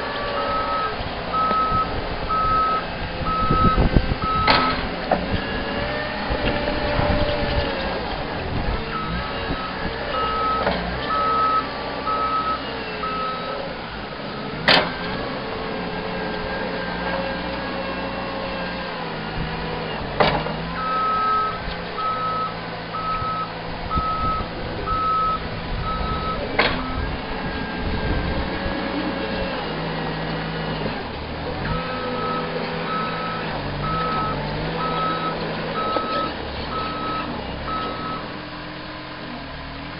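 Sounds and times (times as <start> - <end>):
diesel engine running: 0.0 - 39.9
backup alarm beeping: 0.4 - 4.6.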